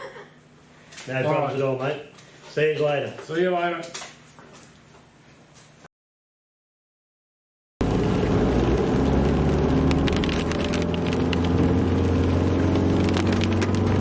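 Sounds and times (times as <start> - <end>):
vehicle engine and road noise: 7.8 - 14.0.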